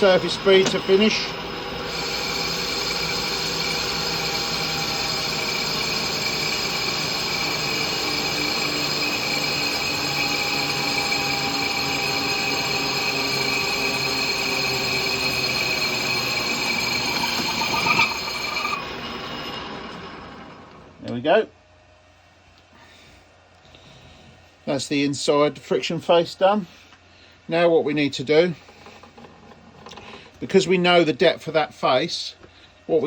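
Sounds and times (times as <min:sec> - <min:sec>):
lathe cutting with high whine: 0:00.0 - 0:21.0.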